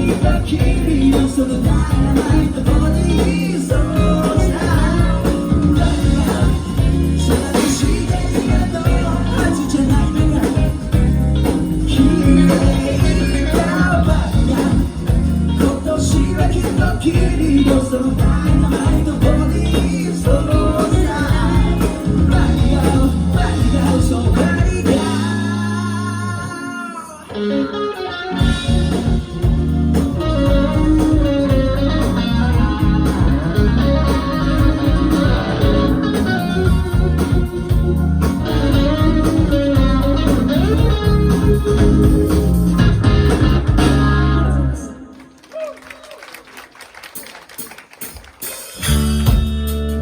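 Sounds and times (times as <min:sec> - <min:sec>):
bass guitar: 0:00.0 - 0:45.2, 0:48.4 - 0:50.0
rock band playing: 0:00.0 - 0:45.5, 0:47.0 - 0:50.0
electric guitar: 0:00.0 - 0:45.7, 0:48.2 - 0:50.0.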